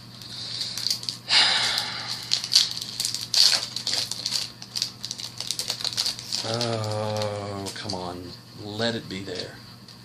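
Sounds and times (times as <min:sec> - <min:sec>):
foil pack tearing and crinkling: 0:00.2 - 0:08.0
cards rustling: 0:00.2 - 0:08.1.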